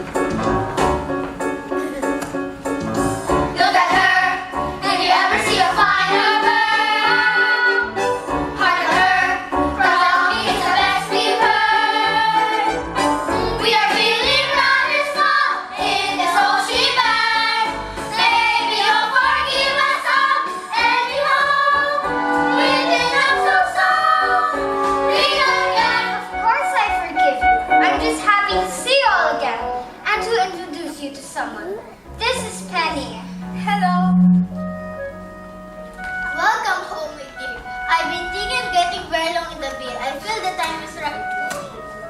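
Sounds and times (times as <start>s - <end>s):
instrumental accompaniment: 0.0s - 42.0s
young voices singing together: 3.0s - 26.4s.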